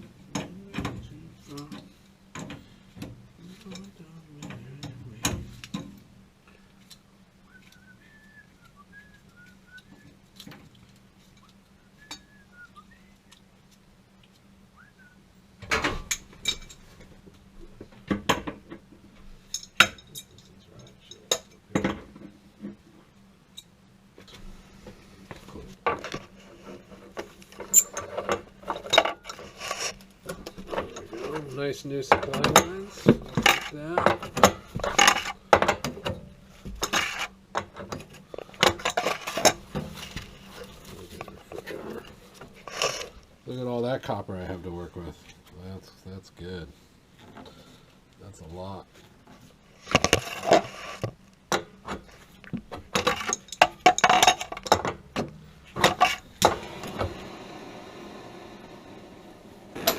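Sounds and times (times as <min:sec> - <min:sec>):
metal tools and fittings clanking: 0:19.5 - 0:22.0, 0:26.9 - 0:43.2, 0:53.0 - 0:55.0.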